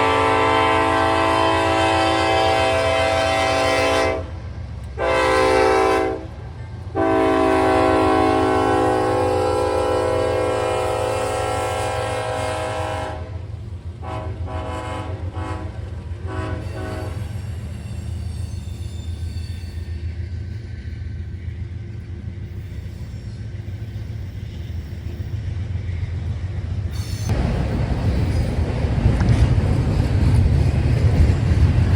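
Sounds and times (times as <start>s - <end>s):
locomotive air horn blasts: 0.0s - 4.4s, 5.0s - 17.4s
train rumbling: 0.0s - 31.9s.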